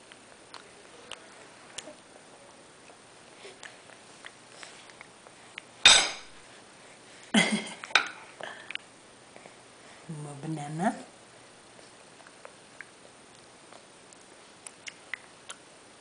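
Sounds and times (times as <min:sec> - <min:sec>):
baby eating clicks and smacks: 0:00.1 - 0:02.1, 0:03.6 - 0:05.8, 0:12.2 - 0:15.7.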